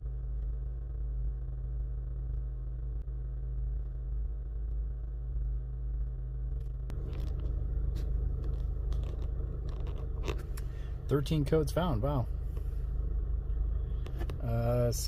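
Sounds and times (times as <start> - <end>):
car engine idling with misfire: 0.1 - 15.0
light clicks and scrapes: 6.9 - 10.9.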